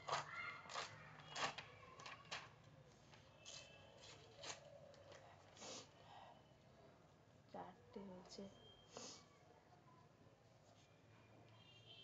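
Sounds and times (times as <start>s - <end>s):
paper tearing and crinkling: 3.4s - 4.7s.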